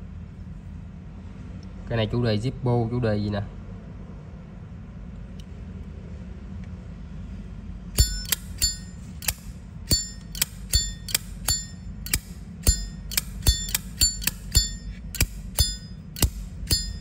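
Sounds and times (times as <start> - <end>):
faint steady hum: 0.0 - 17.0
lighter lid clacking with chime: 8.0 - 17.0.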